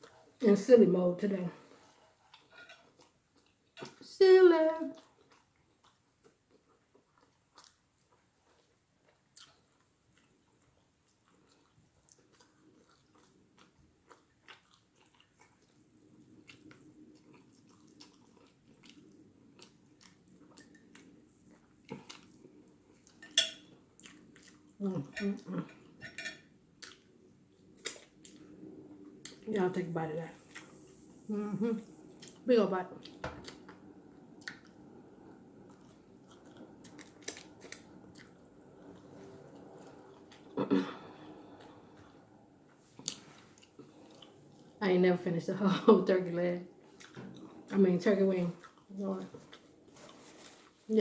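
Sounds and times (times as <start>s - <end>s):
chewing and biting food: 4.9s - 24.8s, 35.6s - 40.6s.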